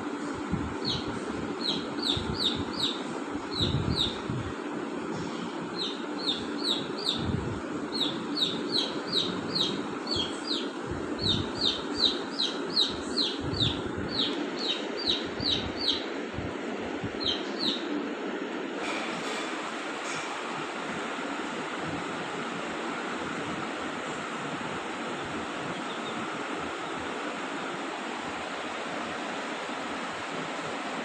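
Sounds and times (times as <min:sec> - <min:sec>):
parakeets calling: 0:00.8 - 0:04.3, 0:05.3 - 0:16.2, 0:17.2 - 0:18.0, 0:25.7 - 0:27.0.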